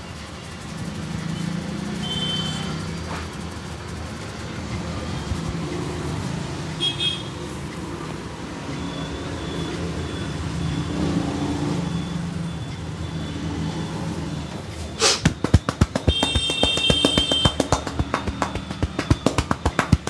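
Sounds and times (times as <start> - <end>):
street traffic noise: 0.0 - 20.0
hands slapping on a head: 15.0 - 20.0.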